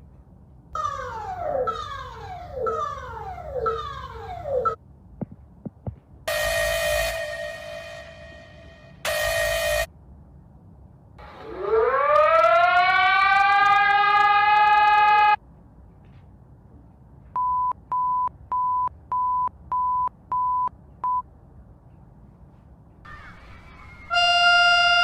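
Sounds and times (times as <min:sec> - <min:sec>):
siren-like alarm tone: 0:00.8 - 0:04.8, 0:06.3 - 0:09.9, 0:11.2 - 0:15.4, 0:23.1 - 0:25.0
short beeps: 0:06.3 - 0:09.9.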